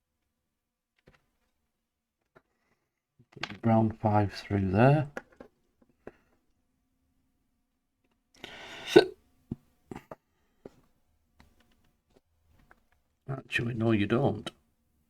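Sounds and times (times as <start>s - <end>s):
person hiccup-like throat sound: 8.8s - 9.2s.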